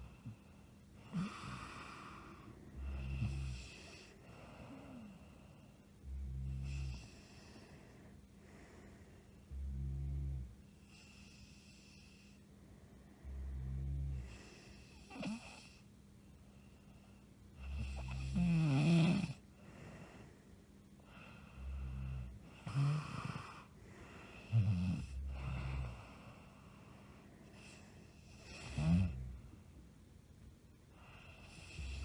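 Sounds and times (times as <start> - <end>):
woman snoring: 0.0 - 7.9, 13.2 - 15.8, 17.6 - 20.2, 21.0 - 29.4, 30.9 - 32.0.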